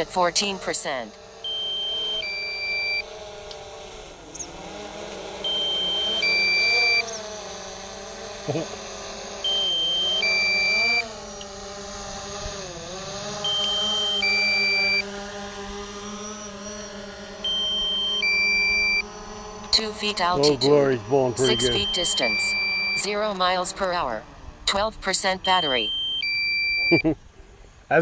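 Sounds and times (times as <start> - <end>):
drone propellers whirring: 0.0 - 28.0
two-tone alarm beep: 0.3 - 3.1, 5.4 - 7.1, 9.4 - 11.1, 13.4 - 15.1, 17.4 - 20.7, 21.4 - 24.1, 24.7 - 27.1.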